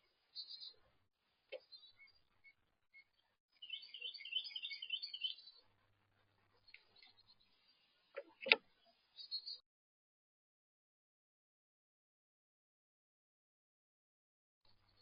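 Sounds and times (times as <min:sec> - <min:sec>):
faint bird chirps: 0:00.0 - 0:09.6, 0:14.7 - 0:15.0
songbird singing high notes: 0:03.6 - 0:05.5.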